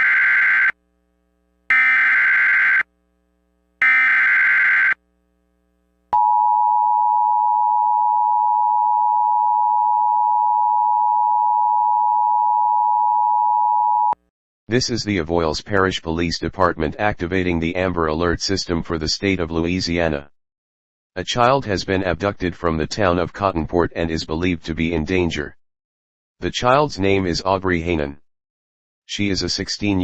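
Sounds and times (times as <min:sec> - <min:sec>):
buzzing data screech: 0:00.0 - 0:00.8, 0:01.7 - 0:02.9, 0:03.8 - 0:05.0.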